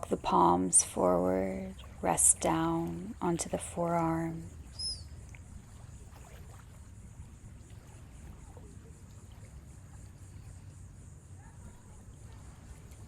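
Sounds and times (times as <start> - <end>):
ocean waves rumbling: 0.0 - 10.8
faint bird chirps: 4.6 - 5.2.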